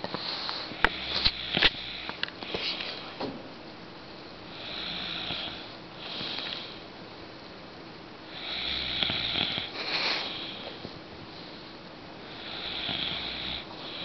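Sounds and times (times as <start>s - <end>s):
woman snoring: 4.5s - 6.6s, 8.3s - 10.6s, 12.3s - 14.0s.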